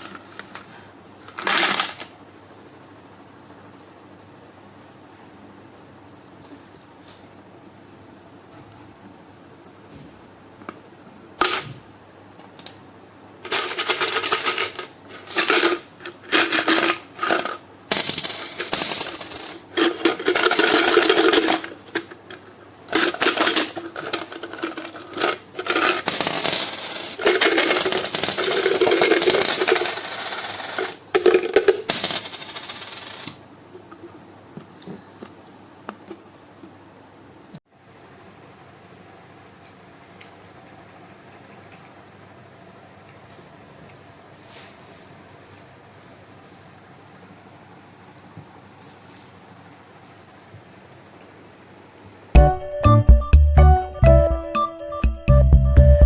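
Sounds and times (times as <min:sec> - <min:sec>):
coins rattling in piggy bank: 0:01.3 - 0:02.2, 0:11.4 - 0:11.7, 0:13.4 - 0:22.2, 0:22.9 - 0:33.4.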